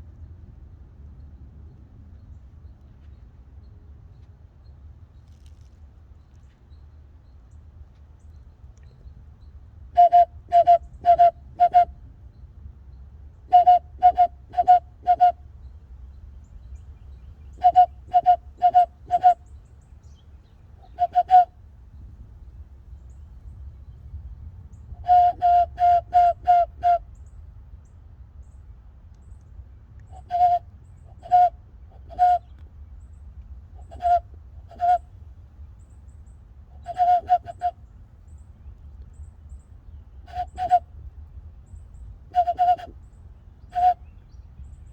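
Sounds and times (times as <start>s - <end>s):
hand-whistled hoots: 10.0s - 12.0s, 13.5s - 15.4s, 17.6s - 19.4s, 20.8s - 21.5s, 25.0s - 27.0s, 30.1s - 32.6s, 33.8s - 35.1s, 36.8s - 37.8s, 40.3s - 40.9s, 42.3s - 43.0s, 43.7s - 44.1s.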